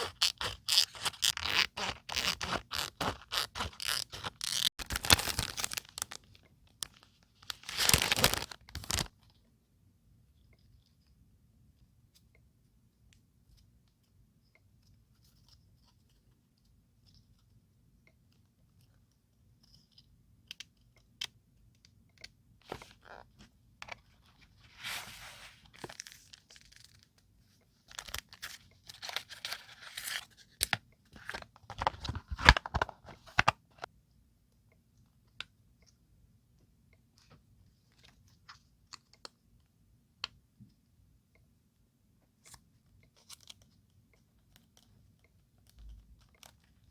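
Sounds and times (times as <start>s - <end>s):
paper rustling and tearing: 0.0s - 6.2s, 7.4s - 9.1s, 24.6s - 27.0s.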